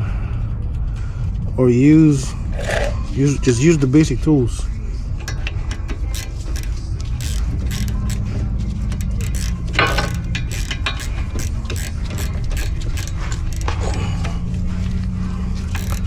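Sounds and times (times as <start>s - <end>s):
ratchet wrench clicking: 5.2s - 16.0s.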